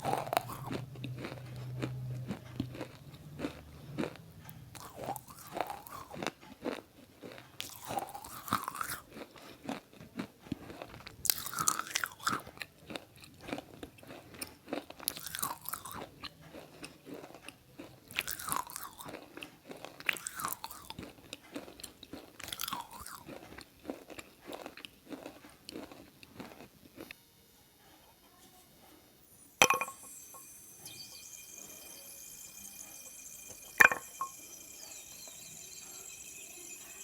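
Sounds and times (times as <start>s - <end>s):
loud crunching bite: 0.0s - 9.9s
crunchy chewing: 0.0s - 28.0s.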